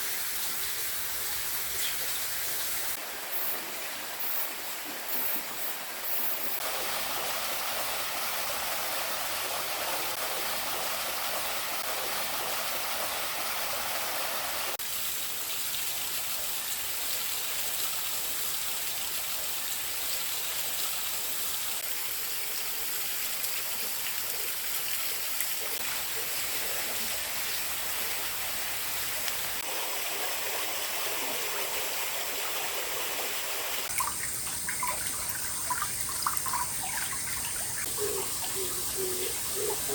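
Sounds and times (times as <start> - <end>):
stream water flowing: 0.0 - 16.2, 21.2 - 39.9
water splashing and gurgling: 29.4 - 39.9.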